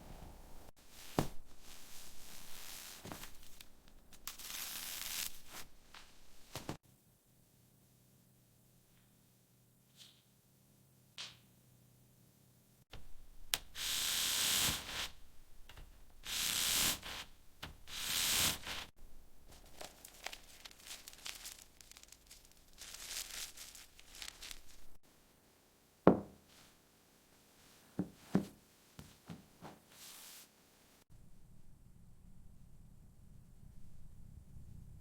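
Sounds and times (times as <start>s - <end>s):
long hissing bursts: 13.6s - 15.2s, 16.2s - 18.9s.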